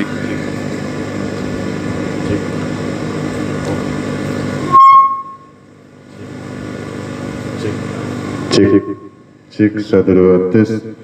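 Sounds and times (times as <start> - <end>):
loudspeaker hum and hiss: 0.0 - 11.0
loud feedback squeal: 4.6 - 5.6, 8.5 - 9.3.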